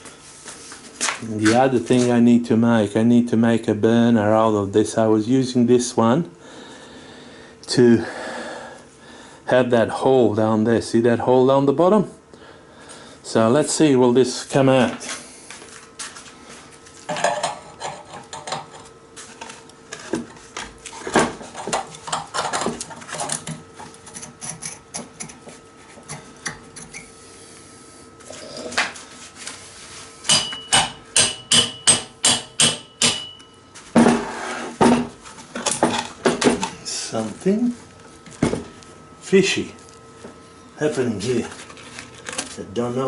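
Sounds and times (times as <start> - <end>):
hammer striking metal: 30.3 - 33.5.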